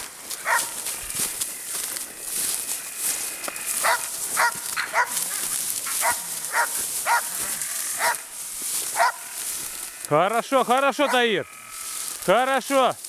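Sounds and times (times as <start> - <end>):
dog barking: 0.4 - 0.8, 3.8 - 5.2, 6.0 - 7.3, 8.0 - 8.2, 9.0 - 9.3, 11.0 - 11.3.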